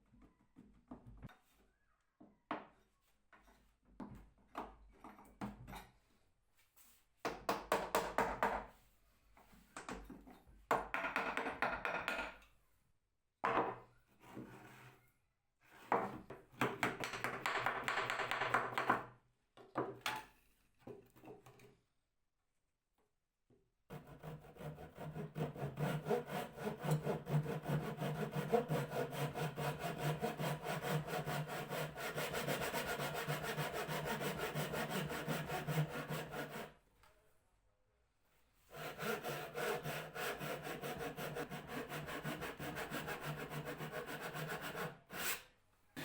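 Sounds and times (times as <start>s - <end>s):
rapid rasping strokes on wood: 23.9s - 36.7s, 38.7s - 45.3s.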